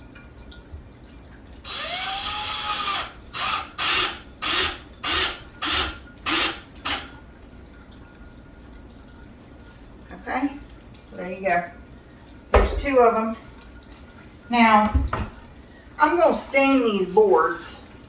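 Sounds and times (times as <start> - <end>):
power drill driving a screw: 1.7 - 7.1.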